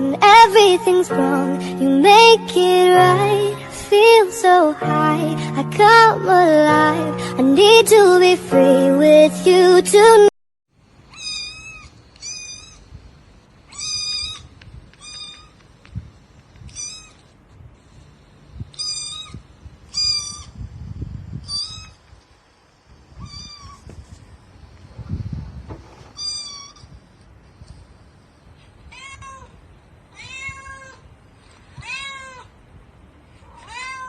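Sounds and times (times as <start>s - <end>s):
cat meowing: 11.1s - 12.9s, 13.7s - 15.6s, 16.7s - 17.2s, 18.7s - 20.6s, 21.5s - 22.0s, 23.2s - 23.9s, 26.2s - 26.9s, 28.9s - 31.0s, 31.7s - 32.5s, 33.5s - 34.0s.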